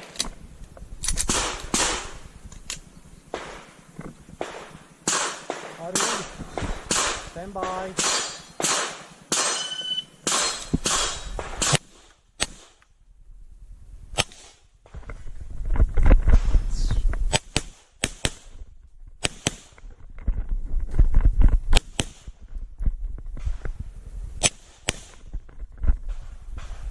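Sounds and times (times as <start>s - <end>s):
pistol shots: 1.2s - 2.1s, 4.4s - 12.8s.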